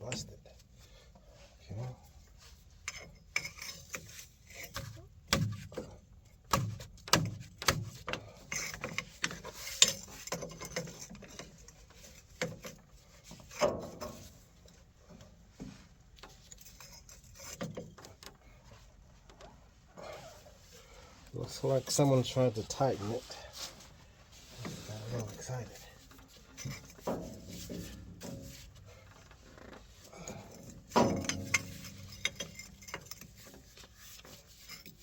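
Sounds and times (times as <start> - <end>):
metallic clinks of hand tools: 30.2 - 33.5.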